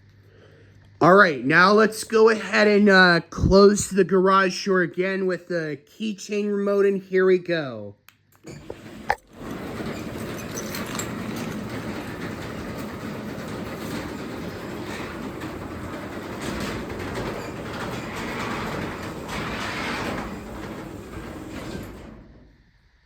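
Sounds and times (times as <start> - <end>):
garage door opener running: 8.4 - 22.8.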